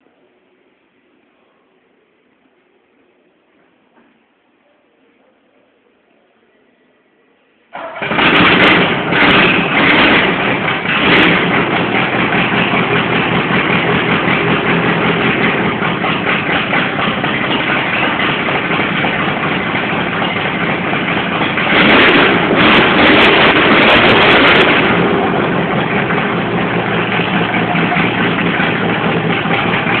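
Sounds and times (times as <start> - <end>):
unmuffled car engine revving and idling: 8.0 - 30.0.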